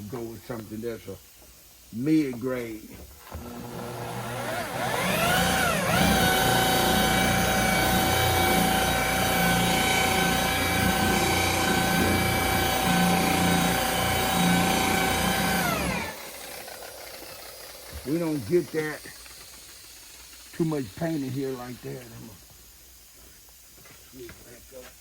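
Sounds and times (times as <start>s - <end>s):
electric polisher whining: 3.3s - 18.1s.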